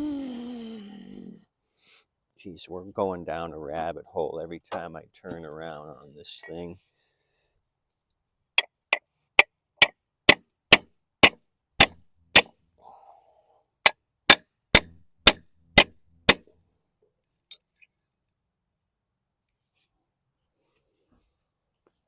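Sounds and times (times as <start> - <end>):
hammer striking metal plate: 10.3 - 12.5, 13.9 - 16.4.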